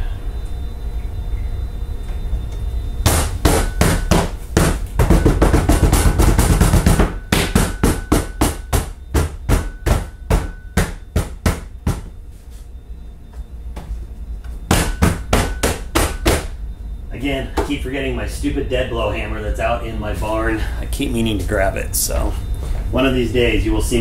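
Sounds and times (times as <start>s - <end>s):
knocking on a workpiece: 3.1s - 12.1s, 14.7s - 16.5s.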